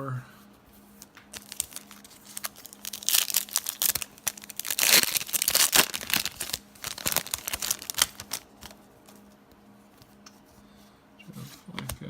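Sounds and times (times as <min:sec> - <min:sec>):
cards being handled: 0:00.8 - 0:10.5, 0:11.3 - 0:12.0
wrapper crinkling and tearing: 0:01.0 - 0:08.8.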